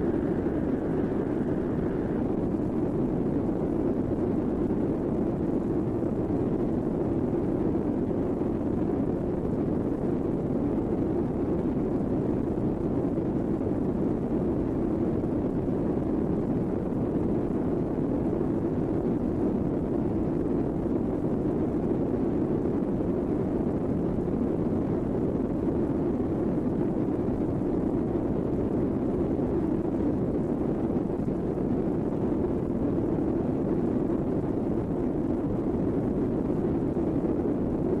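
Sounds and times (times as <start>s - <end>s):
low hissing rumble drone: 0.0s - 12.2s.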